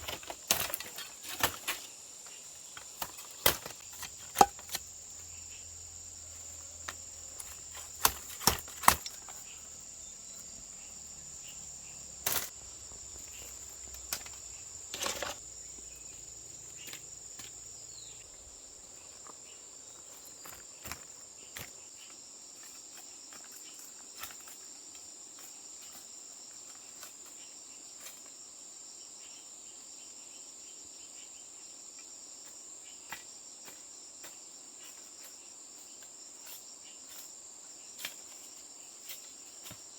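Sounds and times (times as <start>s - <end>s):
insect chirring: 0.0s - 28.6s.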